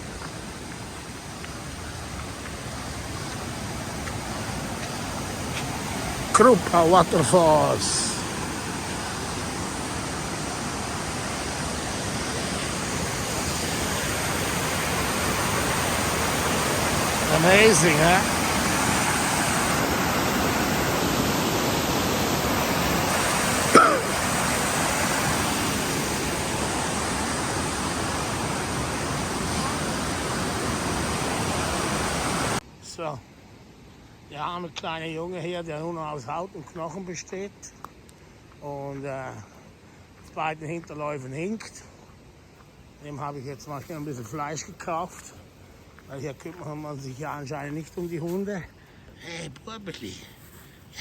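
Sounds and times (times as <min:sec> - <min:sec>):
waterfall rushing: 0:00.0 - 0:32.6.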